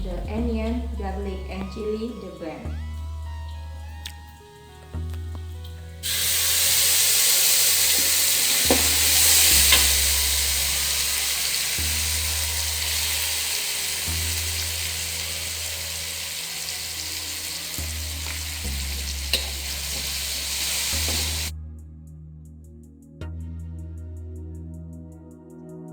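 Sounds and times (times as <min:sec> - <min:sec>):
fish sizzling in hot oil: 0:03.5 - 0:21.5
stirring knocks: 0:07.9 - 0:11.0.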